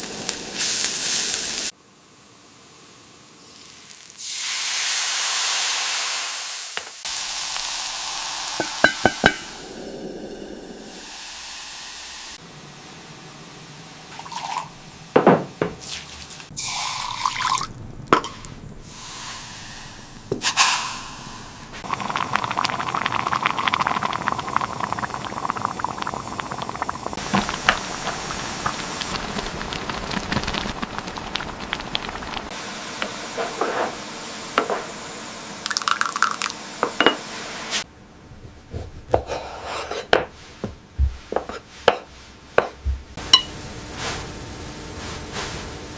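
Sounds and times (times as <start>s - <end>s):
liquid pouring and dripping: 16.6s - 19.0s, 19.8s - 32.5s, 35.7s - 36.5s.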